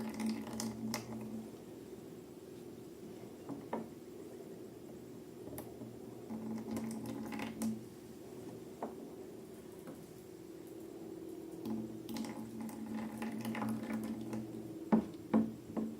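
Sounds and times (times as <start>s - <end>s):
low steady hum: 0.0s - 15.9s.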